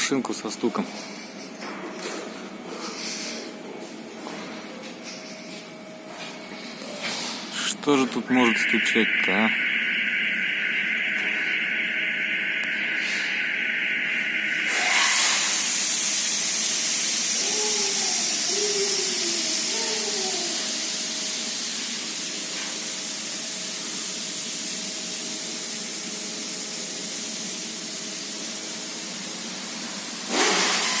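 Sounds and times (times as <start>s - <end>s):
short wavering tone: 7.8s - 16.5s
steady spraying hiss: 8.2s - 30.7s.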